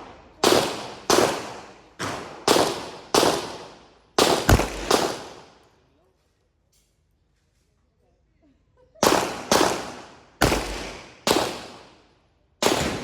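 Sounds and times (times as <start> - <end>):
gunshots with echo: 0.0 - 5.6, 9.0 - 11.9, 12.6 - 13.0.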